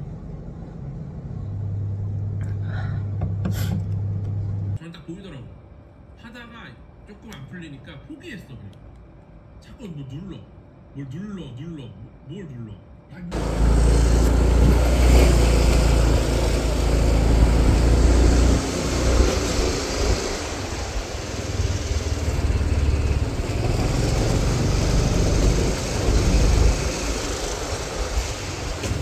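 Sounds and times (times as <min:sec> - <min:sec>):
motor vehicle running: 0:13.3 - 0:29.0
road noise: 0:13.3 - 0:29.0.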